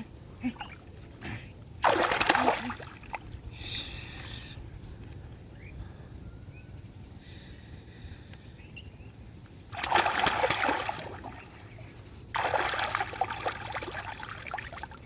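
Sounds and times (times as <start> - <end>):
water splashing: 1.8 - 3.2, 9.7 - 15.0.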